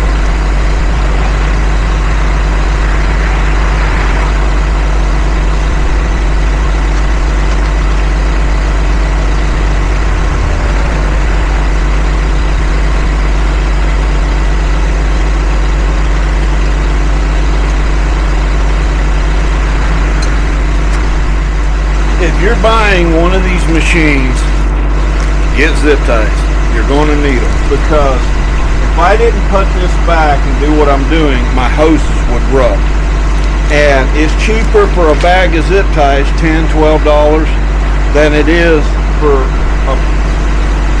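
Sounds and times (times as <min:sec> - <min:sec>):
engine idling: 0:00.0 - 0:41.0.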